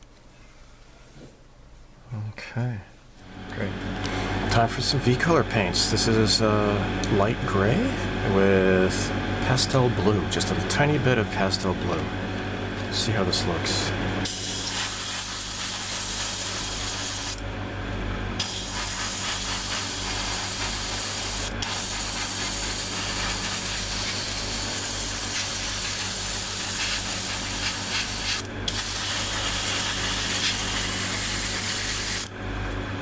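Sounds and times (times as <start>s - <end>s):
airbrush spraying hiss: 14.4s - 17.4s, 18.4s - 32.3s.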